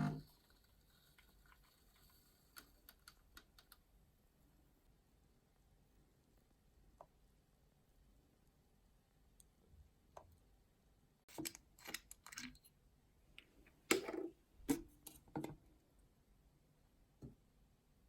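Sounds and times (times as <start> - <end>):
objects clicking and knocking: 11.3 - 12.7.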